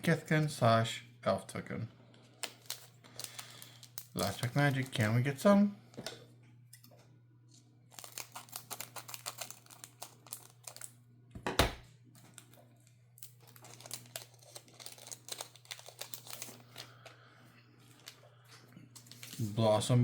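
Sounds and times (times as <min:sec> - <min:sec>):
foil wrapper crinkling: 0:02.2 - 0:05.4, 0:07.9 - 0:11.0, 0:12.1 - 0:17.3, 0:17.9 - 0:18.2, 0:18.9 - 0:19.9
foil wrapper ripping: 0:02.4 - 0:05.2, 0:07.9 - 0:11.0, 0:13.2 - 0:17.1, 0:19.0 - 0:19.6.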